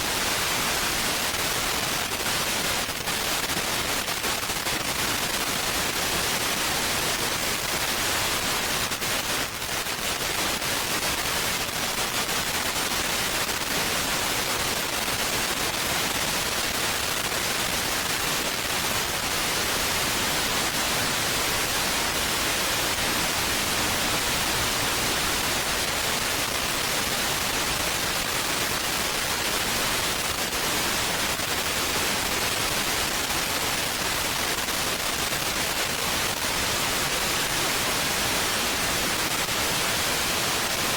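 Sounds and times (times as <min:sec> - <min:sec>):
static hiss: 0:00.0 - 0:40.9.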